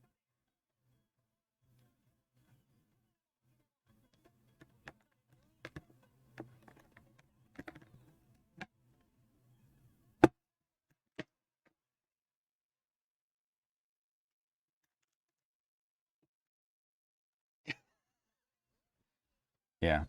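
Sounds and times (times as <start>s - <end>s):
small clicks and taps: 4.1s - 8.7s.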